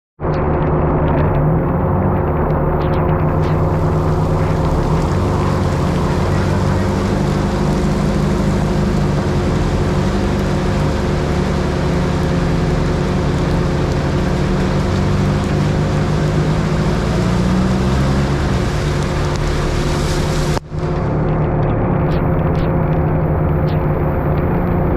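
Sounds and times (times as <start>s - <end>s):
car engine and road noise: 0.2s - 24.9s
rain hiss: 3.0s - 21.0s, 22.1s - 24.9s.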